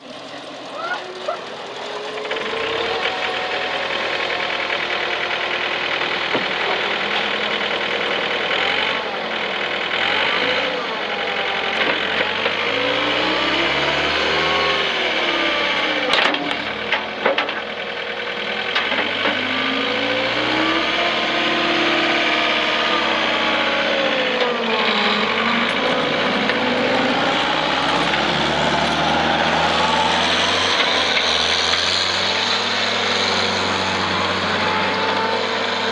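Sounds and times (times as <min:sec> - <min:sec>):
diesel engine revving: 0:00.0 - 0:35.9.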